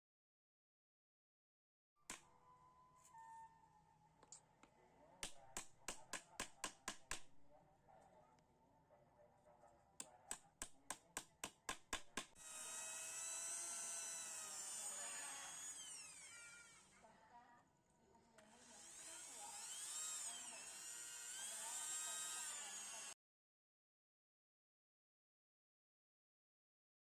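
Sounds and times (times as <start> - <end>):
power tool whining: 12.4 - 16.9, 18.4 - 23.2.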